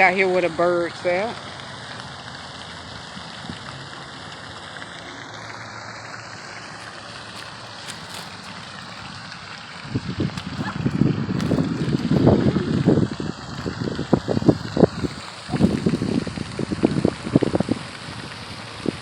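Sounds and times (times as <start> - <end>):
waterfall rushing: 4.9 - 17.9
wind buffeting microphone: 7.3 - 19.0.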